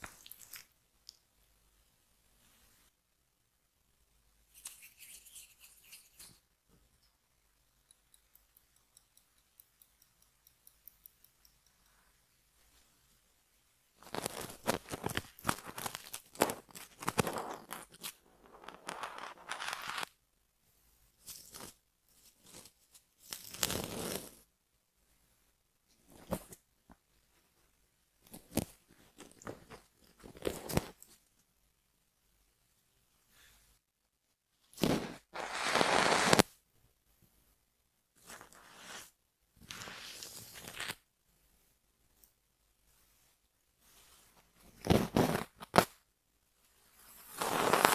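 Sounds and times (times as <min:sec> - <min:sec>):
scratching on hair and scalp: 0:04.6 - 0:06.5, 0:14.0 - 0:20.1, 0:21.4 - 0:24.4, 0:34.8 - 0:36.5, 0:38.2 - 0:41.0, 0:43.8 - 0:46.0, 0:46.9 - 0:47.9.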